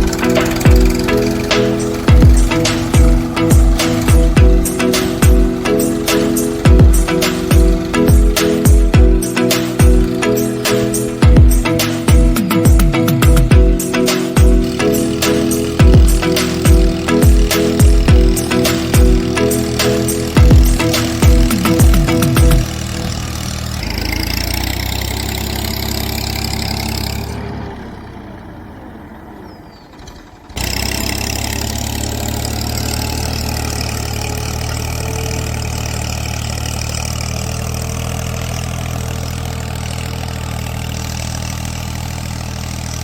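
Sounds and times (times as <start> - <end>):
motor humming: 0.0 - 27.5.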